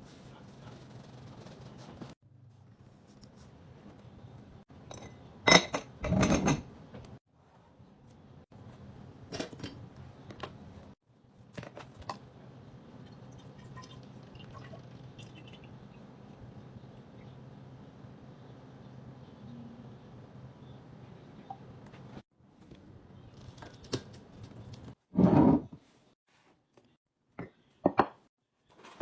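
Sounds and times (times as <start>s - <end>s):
kitchenware clattering: 4.8s - 6.8s, 9.3s - 9.9s
kitchenware knocks and clinks: 4.9s - 6.7s, 25.2s - 25.8s, 27.4s - 28.3s.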